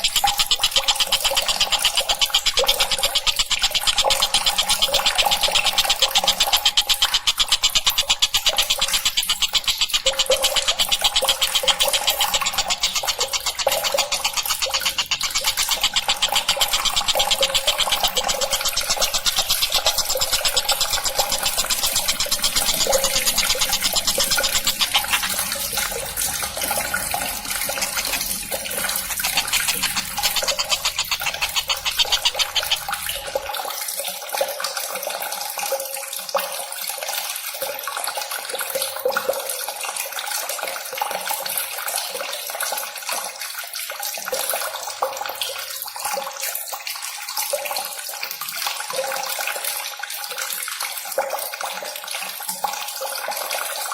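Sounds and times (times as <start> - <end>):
kingfisher calling: 0.0 - 33.5
running water: 0.0 - 53.9.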